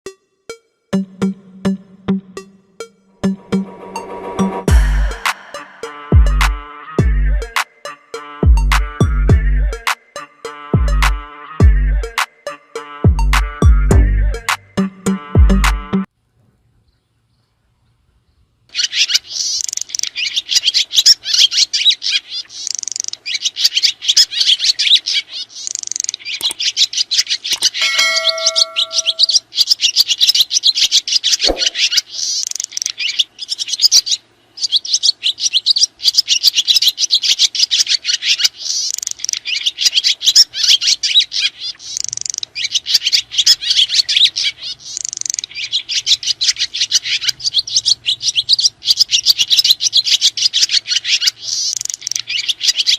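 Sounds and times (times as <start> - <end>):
chime-like ding: 27.8 - 29.4
swiftlets twittering: 27.8 - 29.4.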